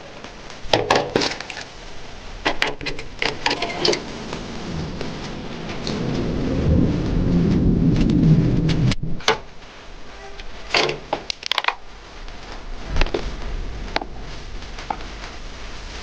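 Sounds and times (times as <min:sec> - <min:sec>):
loud rushing noise: 0:03.1 - 0:10.0, 0:11.9 - 0:16.0.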